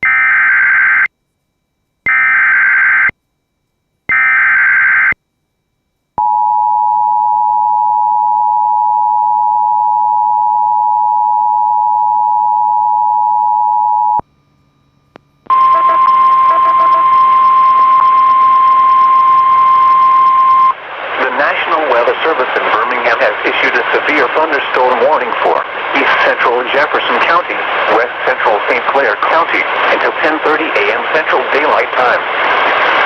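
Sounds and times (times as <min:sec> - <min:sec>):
buzzy data tones: 0:13.7 - 0:21.3
two-tone attention signal: 0:15.5 - 0:20.8.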